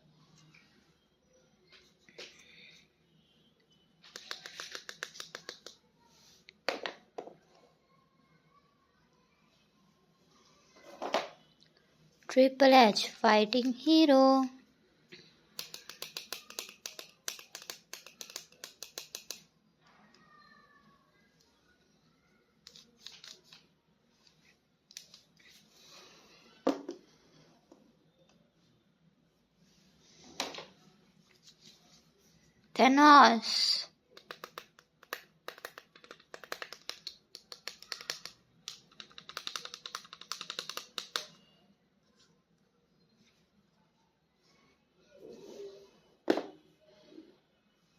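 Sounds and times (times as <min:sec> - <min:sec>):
plastic toy clicks and taps: 0:04.1 - 0:05.8, 0:15.6 - 0:19.5, 0:34.2 - 0:41.4.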